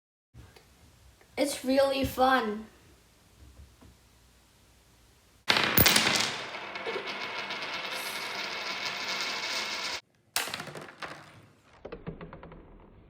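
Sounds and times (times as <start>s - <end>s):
spinning coin ticking: 5.5s - 10.0s.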